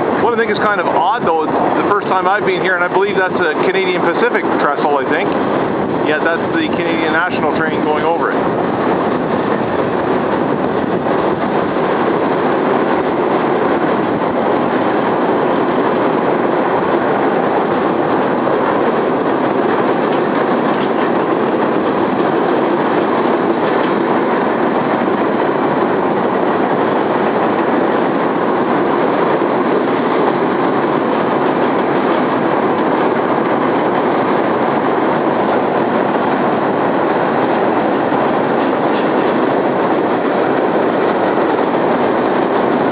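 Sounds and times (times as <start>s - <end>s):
train wheels rumbling on rails: 0.0s - 42.9s.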